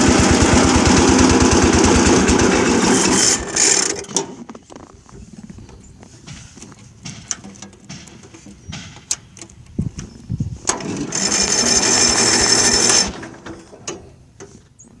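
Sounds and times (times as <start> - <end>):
starter motor cranking engine: 0.0 - 4.4, 10.6 - 13.8.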